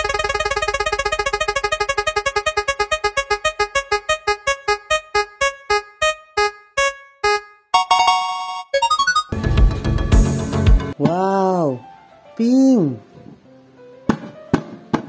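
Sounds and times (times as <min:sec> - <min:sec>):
electronic keyboard note plinking: 0:00.0 - 0:09.4.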